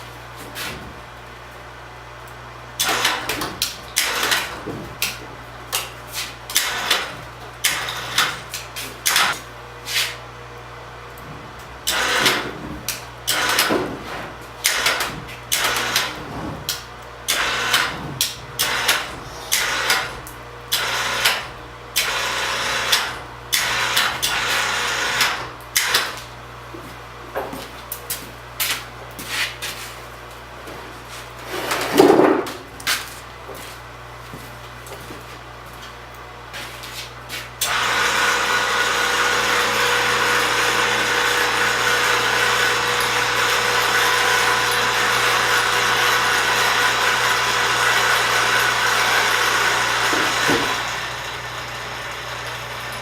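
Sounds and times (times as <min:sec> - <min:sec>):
steady low hum: 0:00.0 - 0:31.9
crane winch motor bursts: 0:02.8 - 0:04.7, 0:06.5 - 0:09.4, 0:11.8 - 0:13.9, 0:14.6 - 0:26.2, 0:37.6 - 0:53.0.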